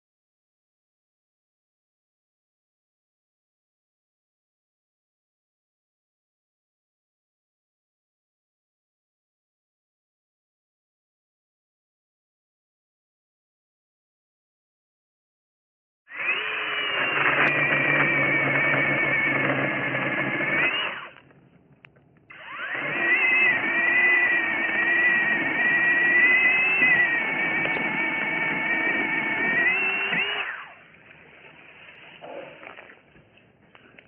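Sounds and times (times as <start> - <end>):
mini chainsaw motor whine: 16.1 - 21.2, 22.3 - 30.8.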